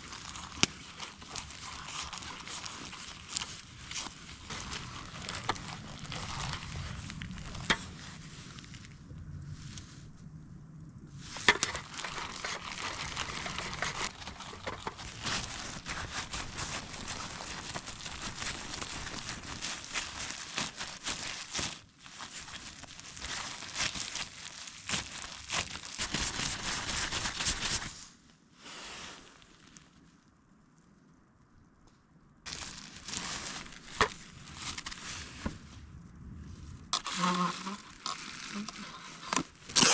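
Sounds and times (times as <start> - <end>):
hands crinkling and rustling dough: 0.0 - 10.2, 11.1 - 31.0, 32.5 - 39.9.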